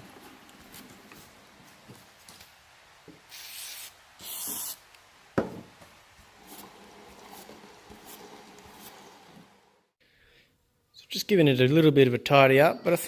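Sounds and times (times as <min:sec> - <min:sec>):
brushing and rubbing: 0:03.2 - 0:04.8, 0:06.2 - 0:09.6
aerosol can spraying: 0:03.3 - 0:04.8.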